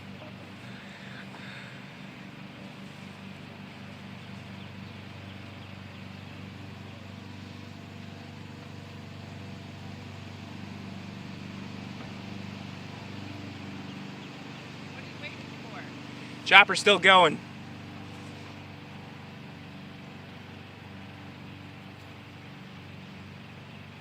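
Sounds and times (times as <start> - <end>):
siren chopper coasting hum: 15.0 - 17.5.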